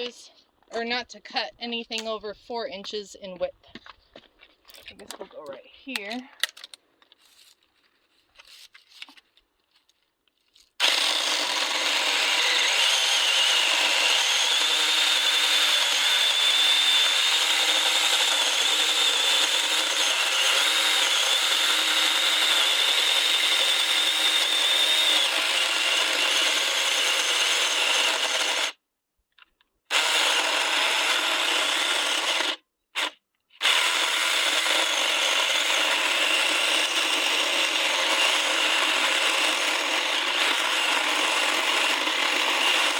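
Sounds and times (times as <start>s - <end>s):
electric chainsaw cutting branch: 10.8s - 28.8s, 29.9s - 42.9s.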